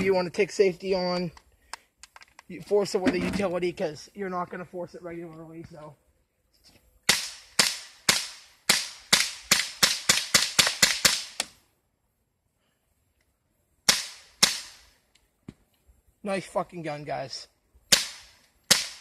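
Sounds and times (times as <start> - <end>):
bb pistol shots: 7.1 - 11.5, 13.9 - 14.8, 17.9 - 19.0.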